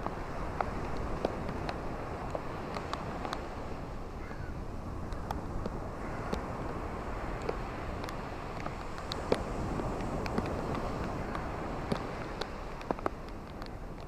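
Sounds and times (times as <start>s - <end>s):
faint ticks: 0.0s - 3.5s, 5.1s - 14.0s
ocean waves washing on shore: 0.0s - 14.0s.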